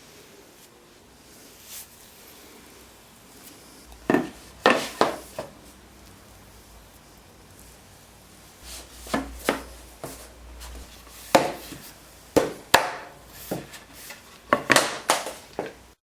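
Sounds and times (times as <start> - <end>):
wooden flooring pieces knocking: 4.1 - 5.5, 14.5 - 15.8.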